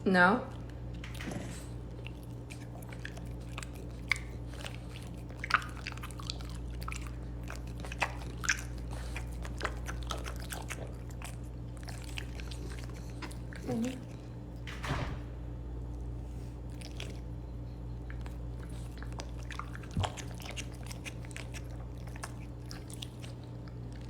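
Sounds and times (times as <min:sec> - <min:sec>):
crunching and clicking: 0:00.5 - 0:17.3, 0:18.1 - 0:24.0
low hum: 0:09.7 - 0:20.5.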